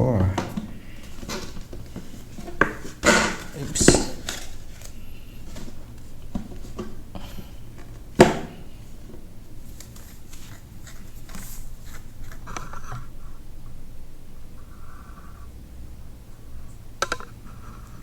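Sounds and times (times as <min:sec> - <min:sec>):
cardboard boxes tapping and rustling: 0:00.1 - 0:13.1.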